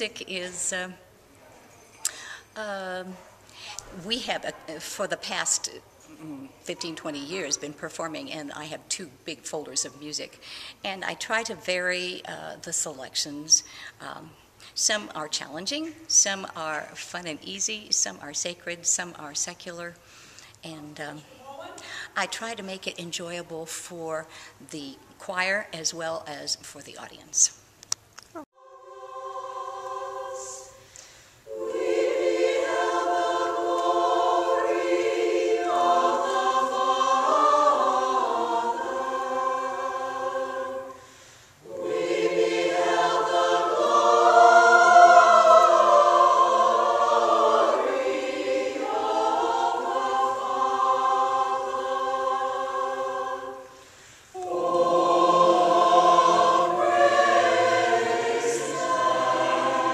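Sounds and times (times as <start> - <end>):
choir singing: 28.6 - 59.9.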